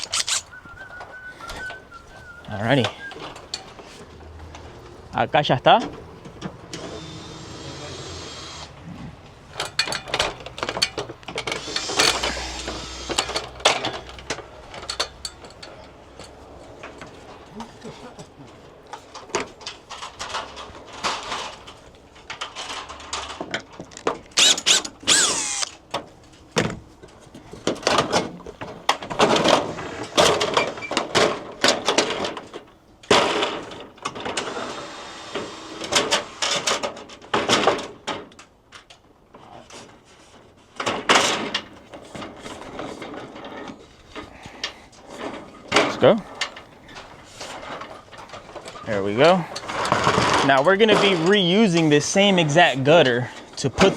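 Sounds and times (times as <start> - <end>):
metal squealing: 0.0 - 3.6
metal gutter knocking and scraping: 9.1 - 24.3, 26.0 - 38.4, 39.7 - 53.9.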